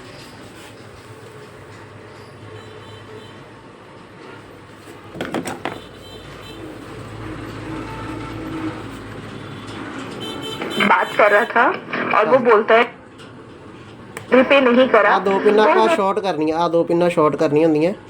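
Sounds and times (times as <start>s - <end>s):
speaker hiss and hum: 10.6s - 13.0s, 14.0s - 17.0s.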